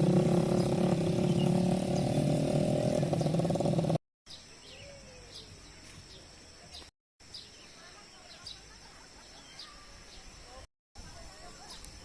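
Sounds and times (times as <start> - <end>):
engine buzzing drone: 0.0 - 4.0
faint birds chirping: 0.1 - 10.7.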